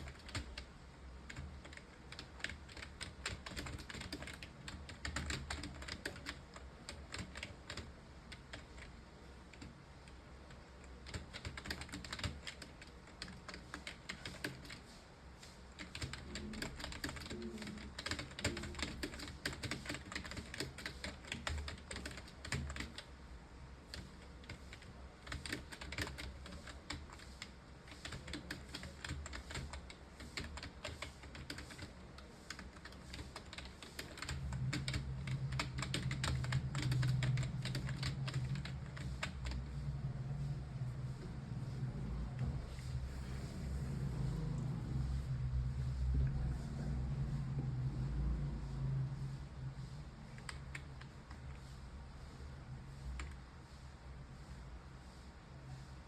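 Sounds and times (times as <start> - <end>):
typing on computer keyboard: 0.0 - 14.8, 15.8 - 23.1, 23.9 - 39.6, 50.4 - 51.6.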